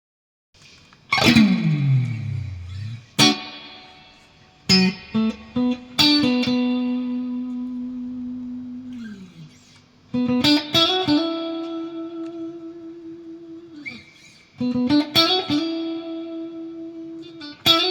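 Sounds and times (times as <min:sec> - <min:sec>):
clean electric guitar: 0:00.9 - 0:17.9.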